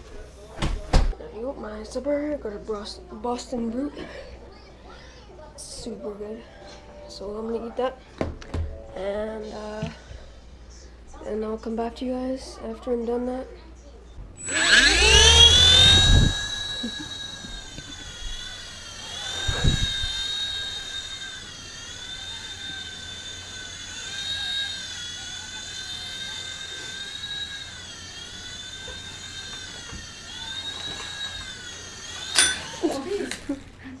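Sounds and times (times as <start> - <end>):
toy helicopter motor whining: 14.4 - 34.0.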